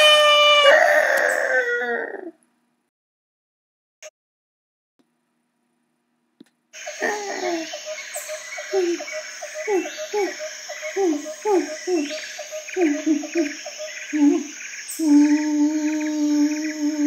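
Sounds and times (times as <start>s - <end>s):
bird chirps: 6.8s - 17.0s
high insect buzz: 6.8s - 17.0s.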